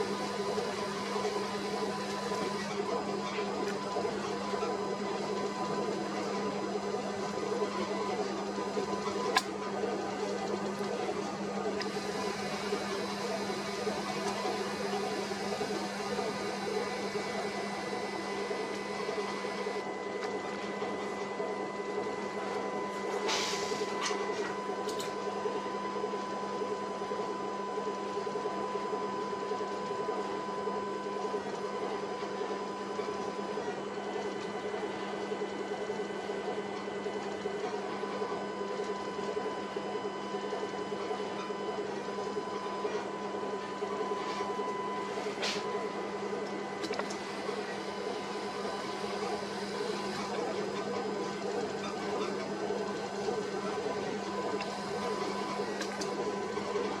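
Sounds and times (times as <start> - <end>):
click: 9.3 - 9.5, 24.8 - 25.2, 46.4 - 47.2, 54.6 - 54.8, 55.8 - 56.2.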